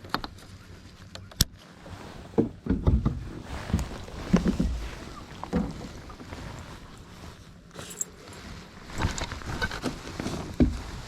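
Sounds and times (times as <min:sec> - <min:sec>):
knocks and clicks on boat: 0:02.4 - 0:06.5.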